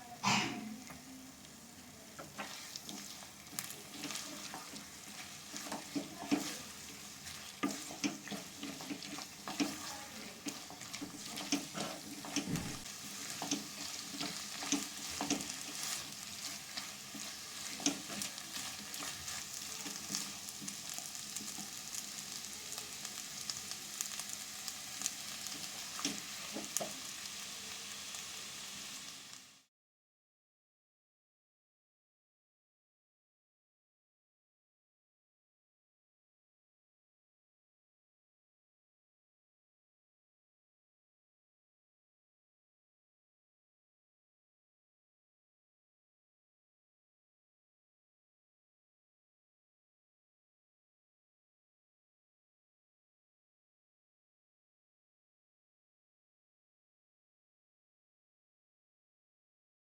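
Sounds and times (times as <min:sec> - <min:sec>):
food sizzling in a frying pan: 0:00.0 - 0:29.7
spatula scraping a pan: 0:02.2 - 0:22.4.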